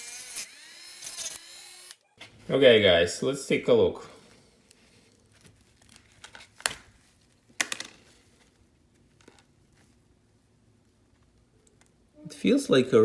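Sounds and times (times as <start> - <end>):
faint crinkling: 4.0 - 12.0.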